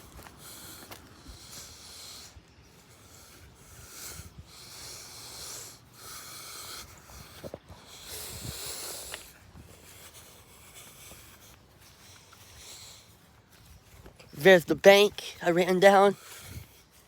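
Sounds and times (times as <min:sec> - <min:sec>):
person breathing heavily: 0:00.0 - 0:17.0.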